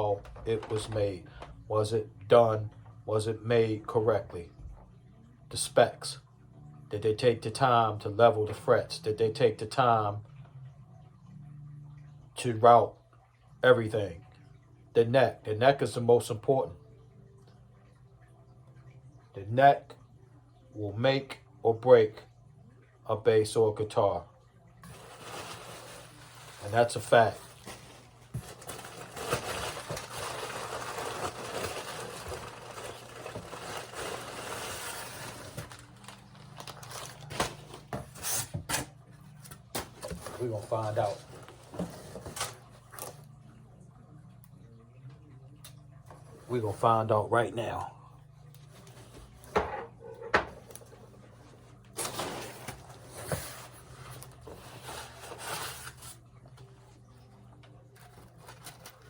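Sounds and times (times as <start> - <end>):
packaging crinkling: 24.8 - 38.3
box scraping and rustling: 24.8 - 38.9, 39.8 - 42.7, 52.0 - 56.2.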